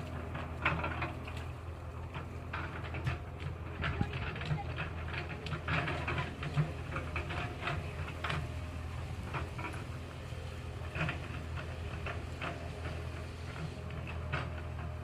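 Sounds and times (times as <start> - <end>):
diesel engine running: 0.0 - 15.0
short clicks and clatters: 0.0 - 15.0.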